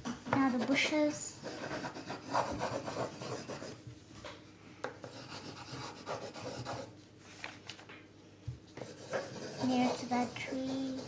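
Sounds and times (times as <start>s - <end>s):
pencil rubbing on paper: 1.4s - 3.8s, 5.0s - 6.9s, 8.8s - 11.0s.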